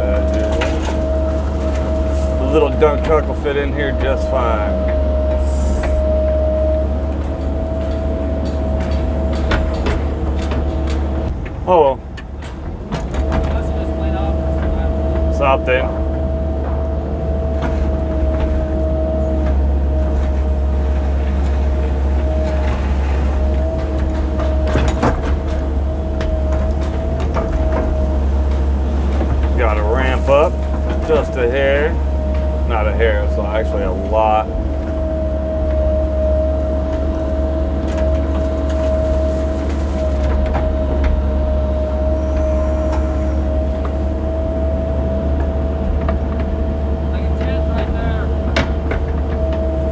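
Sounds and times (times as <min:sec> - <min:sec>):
excavator diesel engine droning: 0:00.0 - 0:49.9
steady whine: 0:17.6 - 0:49.9.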